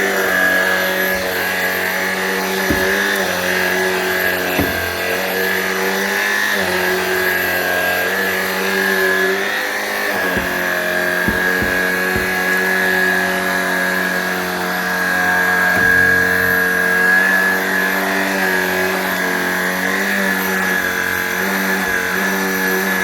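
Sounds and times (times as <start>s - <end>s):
stick vacuum running: 0.8s - 5.6s, 10.0s - 13.2s
short knocks: 2.6s - 5.3s, 10.1s - 12.9s.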